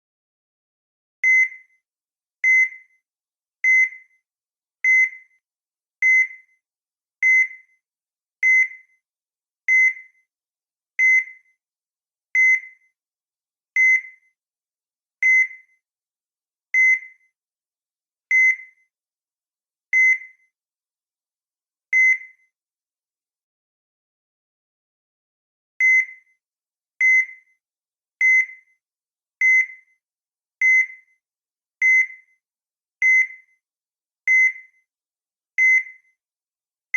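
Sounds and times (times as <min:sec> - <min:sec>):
heart monitor beeping: 0:01.2 - 0:01.7, 0:02.4 - 0:02.9, 0:03.6 - 0:04.1, 0:04.8 - 0:05.3, 0:06.0 - 0:06.4, 0:07.2 - 0:07.6, 0:08.4 - 0:08.9, 0:09.7 - 0:10.1, 0:11.0 - 0:11.4, 0:12.4 - 0:12.8, 0:13.8 - 0:14.2, 0:15.2 - 0:15.6, 0:16.8 - 0:17.2, 0:18.3 - 0:18.7, 0:20.0 - 0:20.4, 0:22.0 - 0:22.4, 0:25.8 - 0:26.2, 0:27.0 - 0:27.4, 0:28.2 - 0:28.5, 0:29.4 - 0:29.8, 0:30.6 - 0:31.0, 0:31.8 - 0:32.2, 0:33.0 - 0:33.5, 0:34.3 - 0:34.7, 0:35.6 - 0:36.0.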